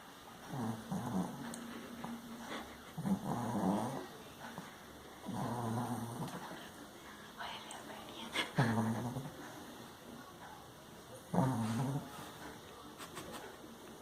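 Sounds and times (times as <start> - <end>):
pet snoring: 0.5 - 1.5, 3.0 - 4.1, 5.2 - 6.6, 8.6 - 9.4, 11.3 - 12.1.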